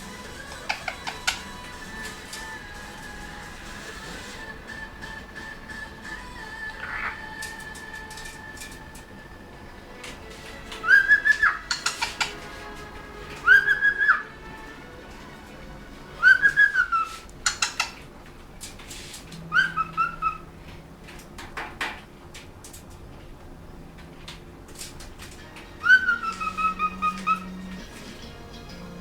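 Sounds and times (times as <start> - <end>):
cockatiel whistling: 0.0 - 18.0, 19.3 - 20.6, 25.4 - 29.0
sharp clicking: 0.1 - 3.0, 10.0 - 12.4, 17.3 - 20.0.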